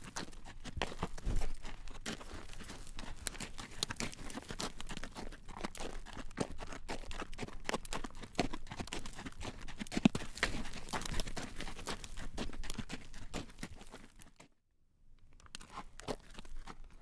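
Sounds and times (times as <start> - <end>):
horse hooves clip-clopping on road: 0.0 - 14.4.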